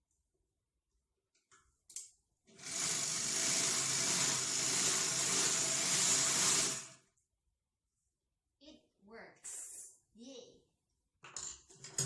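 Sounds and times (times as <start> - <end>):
overlock sewing machine running: 2.5 - 7.0.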